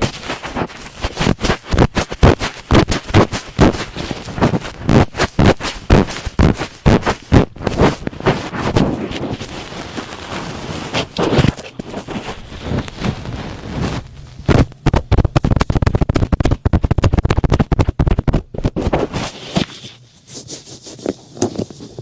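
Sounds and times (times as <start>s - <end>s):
cotton swab rubbing: 0.0s - 22.0s.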